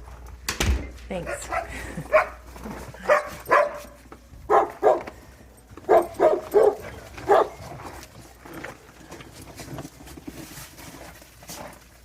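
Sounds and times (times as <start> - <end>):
dog barking: 1.2 - 2.4, 3.0 - 5.1, 5.8 - 7.7.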